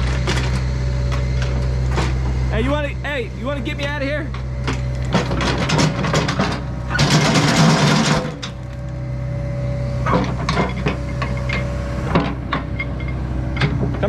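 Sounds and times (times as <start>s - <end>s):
excavator diesel engine running: 0.0s - 14.0s
metal clanks and knocks: 4.3s - 8.6s, 10.1s - 14.0s.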